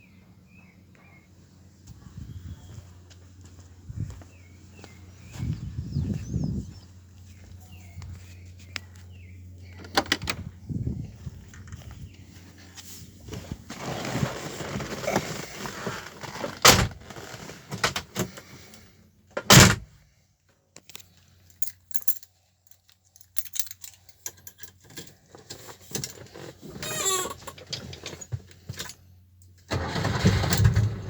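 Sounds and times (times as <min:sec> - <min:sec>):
keys jangling: 0:21.5 - 0:25.1.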